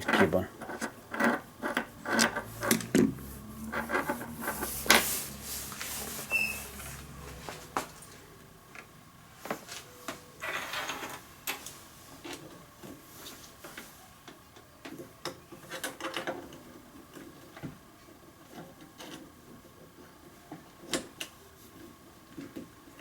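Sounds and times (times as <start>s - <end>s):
short rustle: 2.3s - 8.0s.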